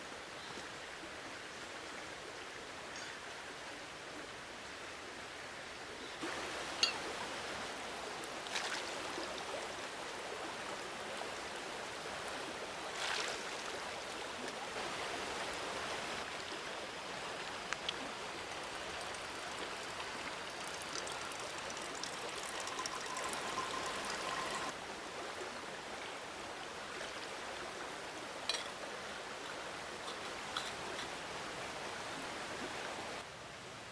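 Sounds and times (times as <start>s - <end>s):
mountain stream running water: 0.0s - 33.9s.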